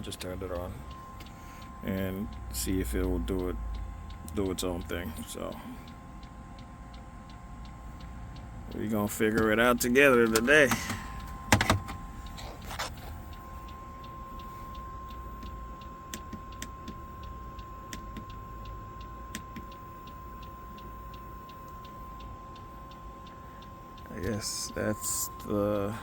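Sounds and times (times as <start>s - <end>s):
heater low hum: 0.0s - 26.0s
steady tone: 0.0s - 26.0s.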